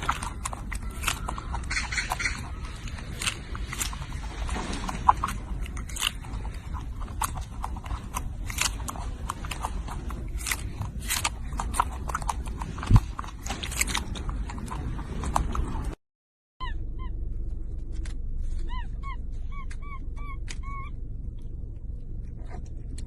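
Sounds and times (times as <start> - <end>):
low rumble: 0.0 - 16.0, 16.6 - 23.0
monkey chewing crunchy food: 0.0 - 16.0.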